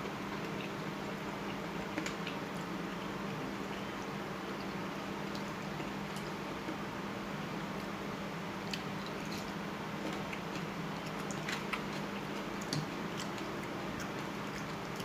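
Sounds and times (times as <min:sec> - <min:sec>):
person chewing noodles: 0:08.6 - 0:15.0.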